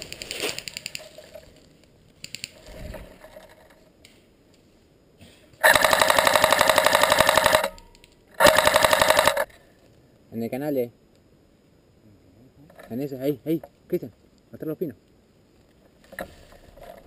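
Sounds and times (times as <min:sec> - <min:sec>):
airsoft gun automatic fire: 0:05.6 - 0:09.5.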